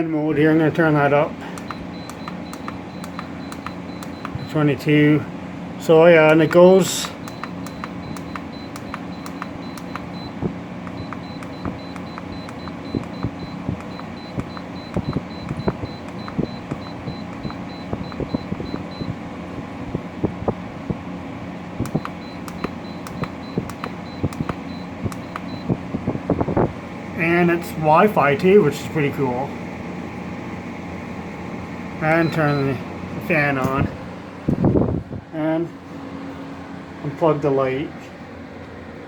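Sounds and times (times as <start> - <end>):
air conditioner humming: 0.0 - 39.0
clicks and ticks: 1.6 - 4.4, 6.3 - 10.2, 10.8 - 18.9, 21.8 - 25.5.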